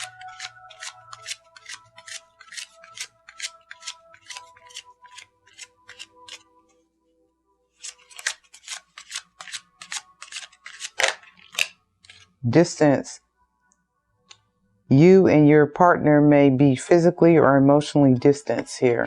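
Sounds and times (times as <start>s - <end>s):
cards being shuffled: 0.0s - 6.8s, 7.7s - 12.4s
soft background music: 0.0s - 19.0s.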